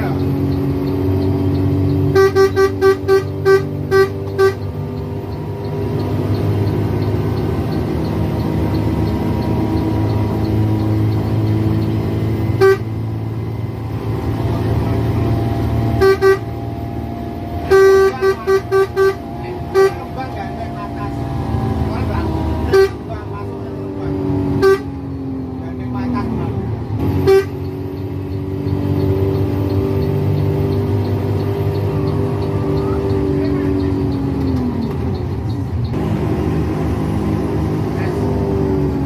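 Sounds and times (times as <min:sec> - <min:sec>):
bus engine droning: 0:00.0 - 0:39.0
bus horn tooting: 0:01.3 - 0:05.2, 0:11.2 - 0:13.4, 0:14.6 - 0:25.3, 0:27.0 - 0:28.2.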